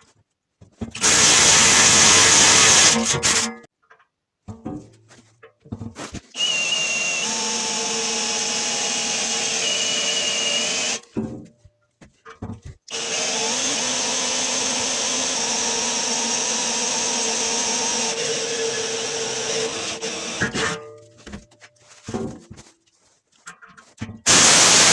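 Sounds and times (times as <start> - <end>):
handheld power tool running: 0.9 - 3.5, 6.4 - 11.1, 12.9 - 20.8, 24.3 - 24.9.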